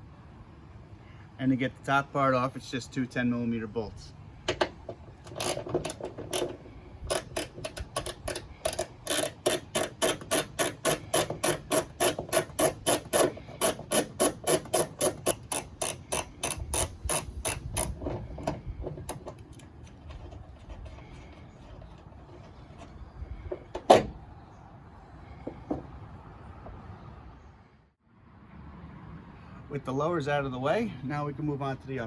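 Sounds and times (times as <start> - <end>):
ratchet wrench clicking: 5.2 - 18.0.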